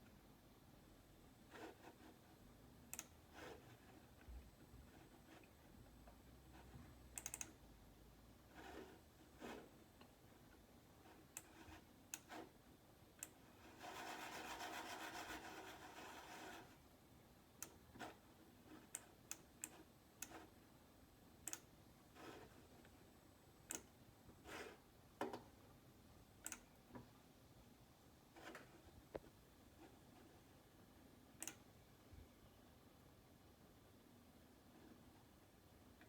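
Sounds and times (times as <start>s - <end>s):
faint clicks and taps: 13.2s - 13.5s, 17.6s - 20.6s, 25.2s - 25.7s, 26.4s - 27.2s, 28.3s - 30.4s, 31.4s - 31.7s
rubbing sound: 13.6s - 16.8s.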